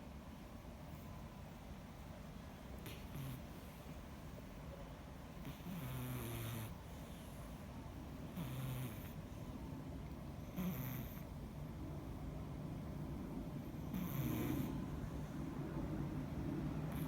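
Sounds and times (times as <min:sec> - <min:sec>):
cat snoring: 0:02.8 - 0:03.8, 0:05.4 - 0:07.4, 0:08.3 - 0:09.2, 0:10.4 - 0:11.3, 0:13.6 - 0:15.3.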